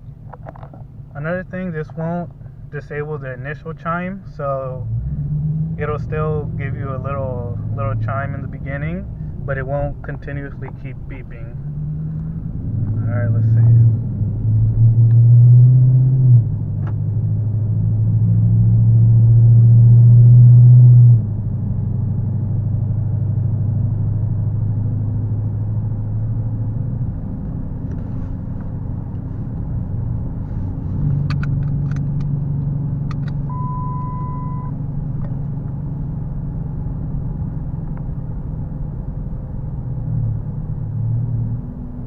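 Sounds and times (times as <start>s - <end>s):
car engine droning in cabin: 0.0s - 42.0s
sharp clicks: 31.2s - 33.5s
brief single tone: 33.5s - 34.8s.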